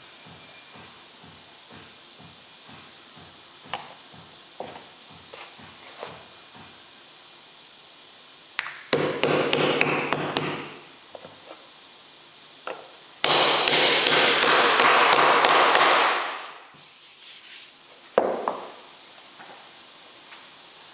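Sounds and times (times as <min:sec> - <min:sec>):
power tool noise with low hum: 0:00.0 - 0:20.9.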